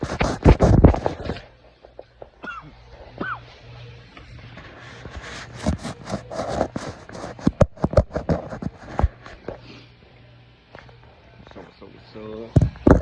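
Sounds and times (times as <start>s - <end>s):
person coughing: 2.4s - 3.4s.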